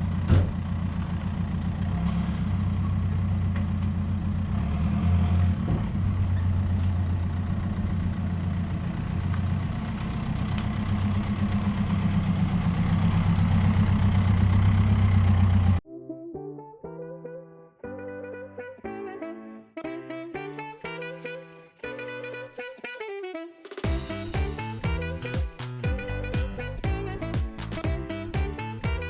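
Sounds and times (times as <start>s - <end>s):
engine idling: 0.0s - 15.8s.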